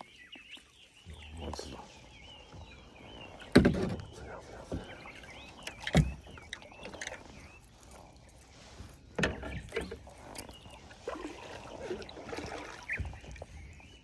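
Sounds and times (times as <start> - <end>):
faint water sounds: 0.0 - 14.0
knocks against a kayak: 3.4 - 5.0.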